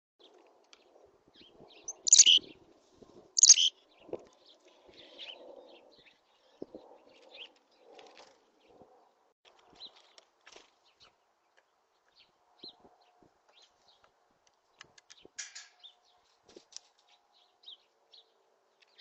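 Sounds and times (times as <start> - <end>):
bird harsh high calls: 1.9 - 2.4, 3.4 - 3.7
faint bird chips: 1.9 - 2.4, 3.4 - 3.7.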